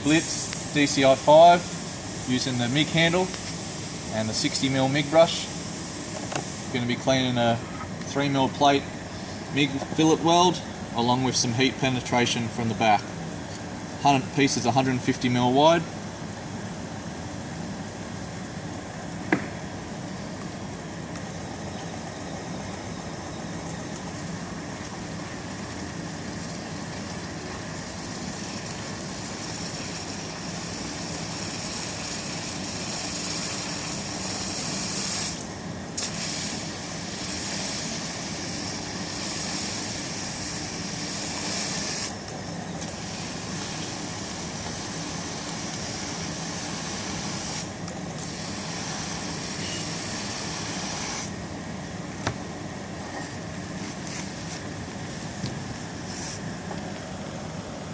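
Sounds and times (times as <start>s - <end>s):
polishing brush hissing: 0.0s - 11.7s, 21.4s - 51.4s, 53.0s - 57.6s.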